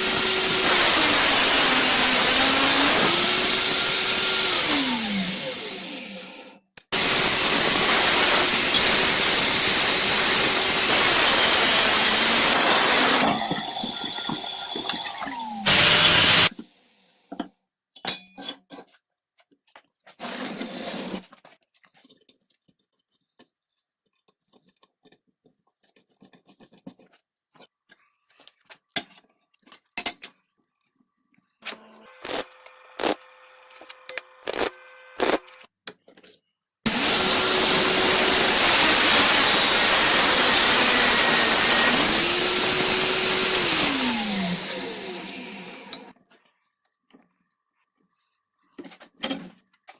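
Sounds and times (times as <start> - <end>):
angle grinder whining: 0.0 - 16.6, 31.7 - 35.6, 36.9 - 46.1.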